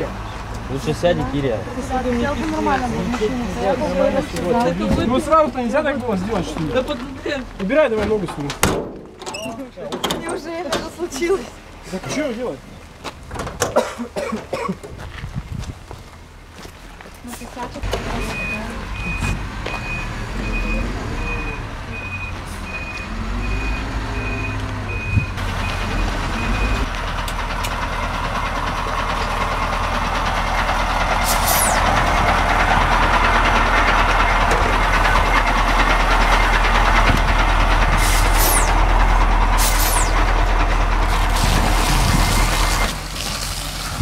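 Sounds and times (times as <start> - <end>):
truck engine running: 17.8 - 44.0
reversing alarm beeping: 18.1 - 26.9.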